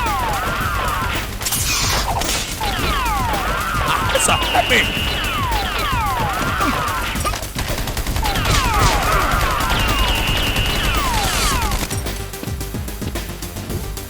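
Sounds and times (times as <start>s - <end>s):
falling whistling tones: 0.0s - 12.0s
rapid gunshots volley: 0.0s - 12.3s.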